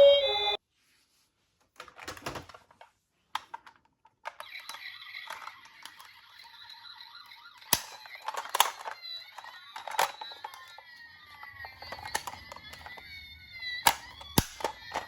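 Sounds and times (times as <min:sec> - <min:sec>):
faint steady high tone: 0:00.0 - 0:00.6
toy car plastic clicks and rattles: 0:01.8 - 0:15.0.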